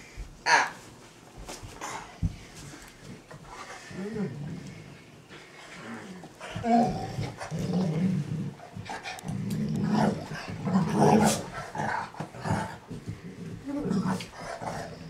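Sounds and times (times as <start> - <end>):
dogs growling: 3.1 - 15.0.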